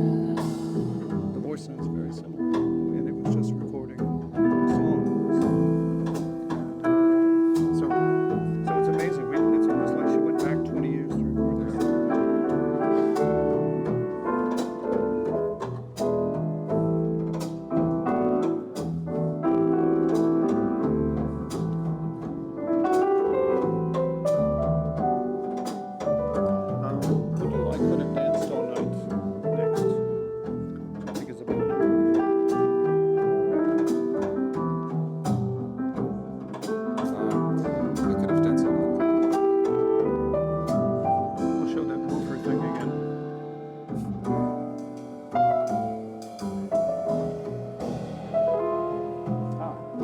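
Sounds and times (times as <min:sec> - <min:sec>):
jazz piano and double bass: 0:00.0 - 0:50.0.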